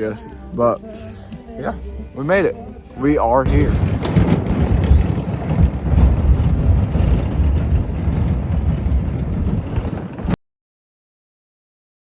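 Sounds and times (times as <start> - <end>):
car driving over rough road: 3.4 - 10.4.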